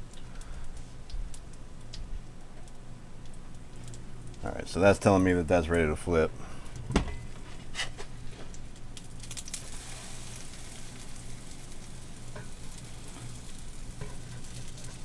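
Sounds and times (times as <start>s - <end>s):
food sizzling in frying pan: 7.2s - 15.0s.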